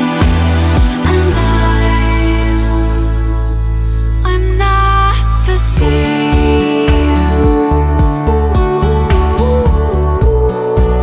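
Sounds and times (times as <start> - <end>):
background music with drums and bass: 0.0 - 2.6, 5.7 - 11.0.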